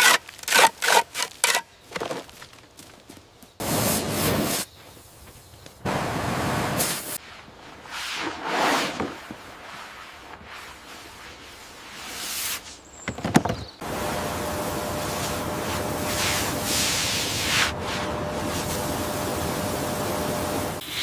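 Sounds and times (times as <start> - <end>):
rough hissing scraping: 3.6 - 4.7, 6.5 - 13.0.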